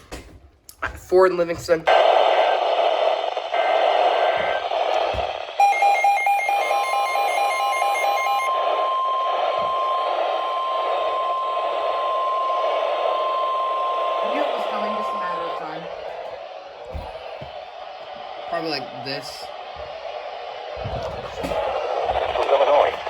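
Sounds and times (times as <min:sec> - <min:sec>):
radio static hiss: 0:01.9 - 0:05.6, 0:08.4 - 0:16.4, 0:21.0 - 0:23.0
steady warning alarm tone: 0:01.9 - 0:20.2
warbling data tones: 0:01.9 - 0:23.0.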